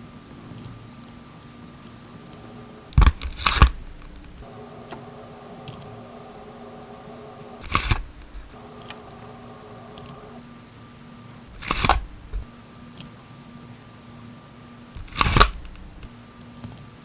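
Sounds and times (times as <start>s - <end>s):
sticky tape ball crinkling: 11.5s - 12.5s.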